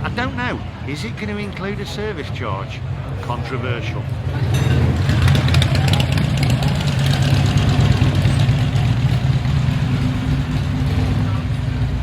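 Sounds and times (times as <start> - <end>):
motorcycle engine idling: 4.8 - 12.0.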